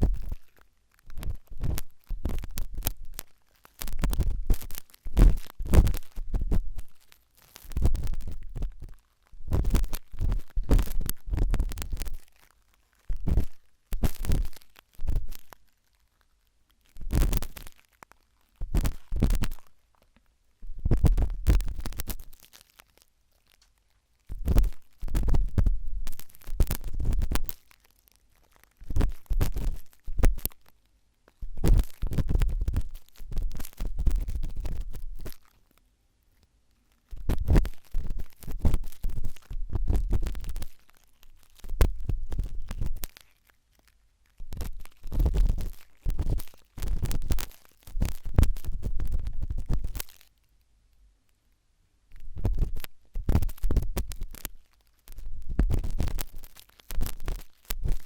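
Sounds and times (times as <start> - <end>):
toothpick scratching in ear: 0.0 - 12.4, 44.5 - 50.2.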